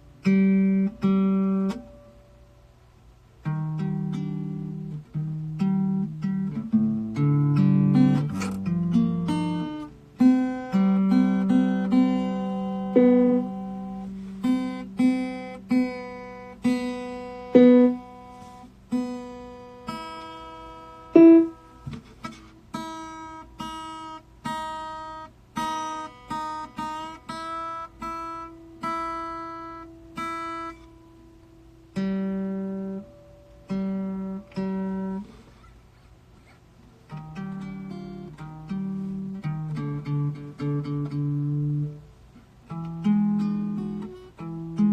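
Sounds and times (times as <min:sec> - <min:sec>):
acoustic guitar playing: 0:00.0 - 0:44.9.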